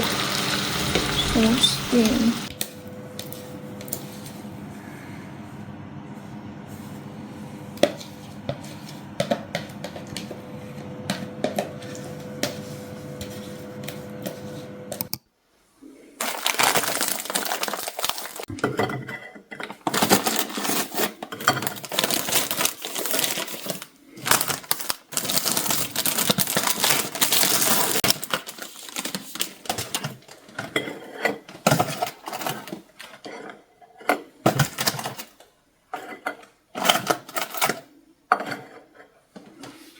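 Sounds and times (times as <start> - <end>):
steady hum: 0.0 - 3.1
dishes and utensils clattering: 18.5 - 22.0, 29.8 - 35.2, 35.9 - 39.2.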